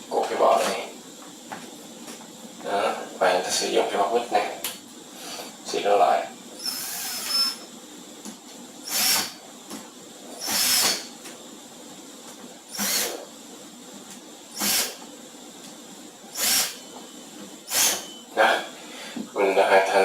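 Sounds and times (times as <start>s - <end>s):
cordless screwdriver bursts: 6.6s - 7.7s, 8.8s - 9.4s, 10.4s - 11.1s, 12.7s - 13.2s, 14.6s - 15.0s, 16.4s - 16.8s, 17.7s - 18.1s.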